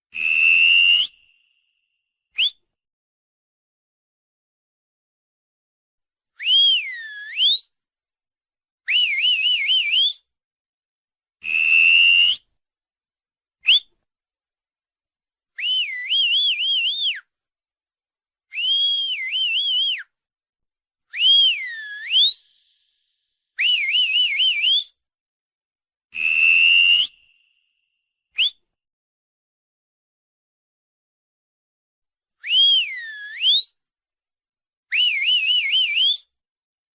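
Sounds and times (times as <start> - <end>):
person whistling: 0.2 - 1.6, 2.4 - 2.6, 6.4 - 7.7, 11.4 - 12.5, 13.6 - 13.9, 15.6 - 17.3, 18.5 - 20.1, 21.1 - 22.9, 23.6 - 25.0, 26.2 - 27.6, 28.4 - 28.6, 32.4 - 33.8.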